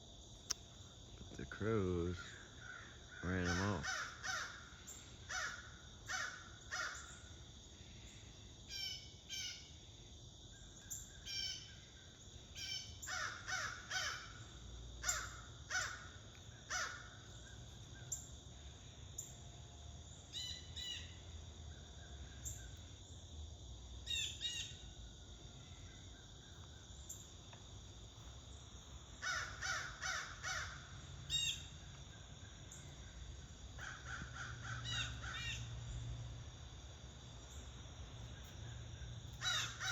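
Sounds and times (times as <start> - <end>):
crows cawing: 2.2 - 7.2, 13.0 - 17.3, 29.2 - 31.0, 33.8 - 35.7, 39.4 - 39.9.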